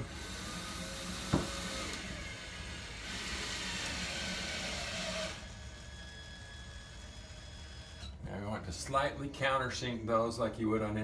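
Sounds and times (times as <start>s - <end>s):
drill driving screws into drywall: 0.0s - 8.0s.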